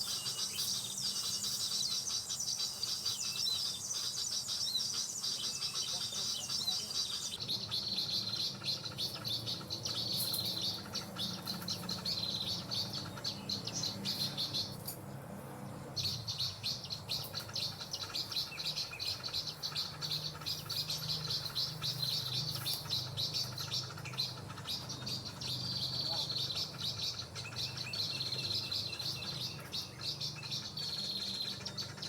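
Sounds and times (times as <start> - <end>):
bird high chirps: 0.0 - 15.0, 15.9 - 32.0.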